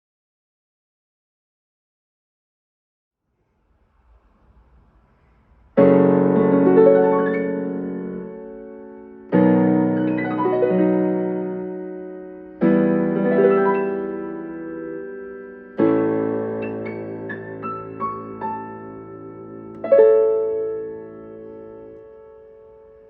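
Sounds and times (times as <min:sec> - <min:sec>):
faint low hum: 0:03.3 - 0:08.6.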